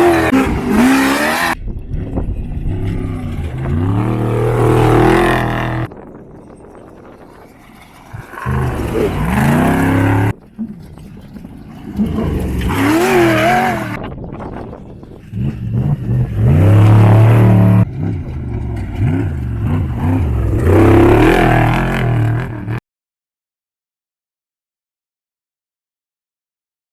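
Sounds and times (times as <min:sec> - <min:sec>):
race vehicle engines revving: 0:00.0 - 0:05.9, 0:07.6 - 0:22.8.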